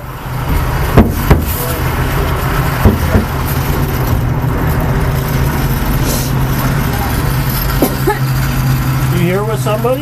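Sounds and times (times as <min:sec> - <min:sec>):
vehicle engine rumbling: 0:00.0 - 0:10.0
short thumps: 0:02.8 - 0:03.5.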